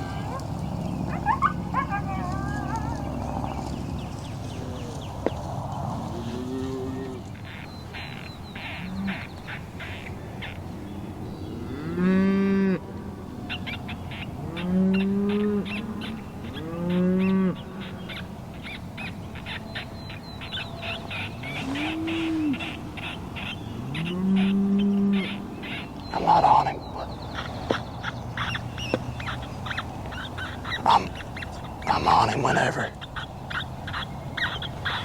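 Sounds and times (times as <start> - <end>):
cattle mooing: 5.9 - 7.5, 11.6 - 12.9, 14.4 - 18.2, 19.3 - 33.0.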